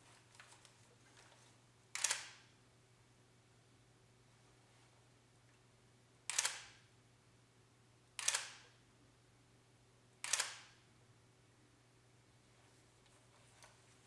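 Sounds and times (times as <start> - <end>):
camera shutter clicks: 10.2 - 10.7.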